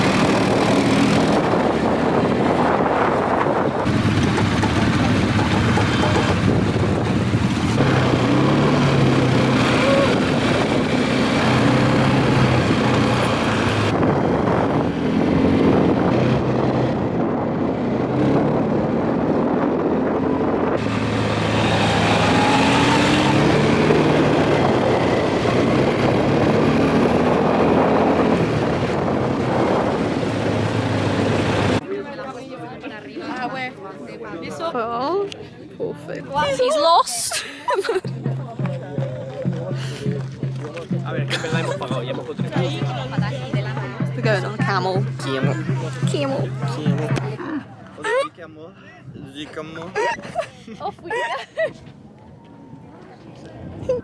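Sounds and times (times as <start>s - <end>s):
quad bike engine running: 0.0s - 31.8s.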